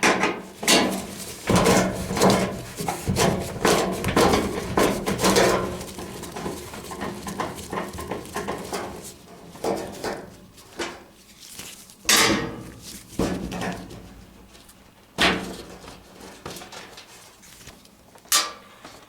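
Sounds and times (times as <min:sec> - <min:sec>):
sheet metal panels clunking: 0:00.1 - 0:10.3.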